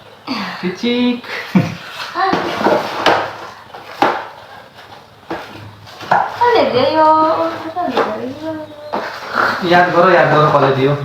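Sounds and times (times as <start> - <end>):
high wavering voice: 6.4 - 9.4.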